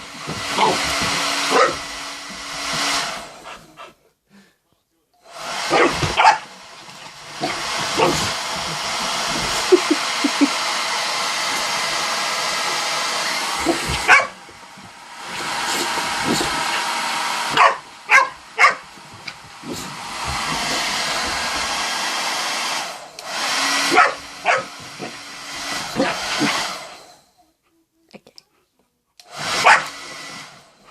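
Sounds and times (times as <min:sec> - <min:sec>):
hair dryer blowing: 0:00.0 - 0:03.7, 0:05.2 - 0:27.2, 0:29.2 - 0:30.9
dog barking: 0:01.5 - 0:01.8, 0:05.7 - 0:06.5, 0:14.0 - 0:14.4, 0:17.5 - 0:18.8, 0:23.9 - 0:24.7, 0:29.6 - 0:29.9.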